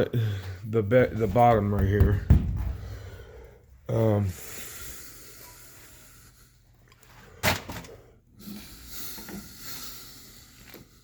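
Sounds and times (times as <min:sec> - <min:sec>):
handling noise: 0:00.9 - 0:03.6
sharp knock: 0:01.1 - 0:03.4.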